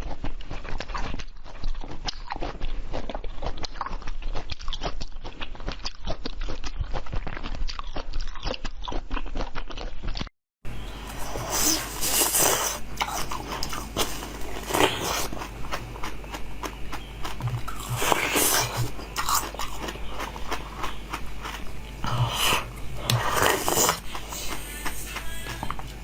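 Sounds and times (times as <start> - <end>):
crunchy chewing of food: 0.0 - 26.0
low hum: 10.7 - 26.0.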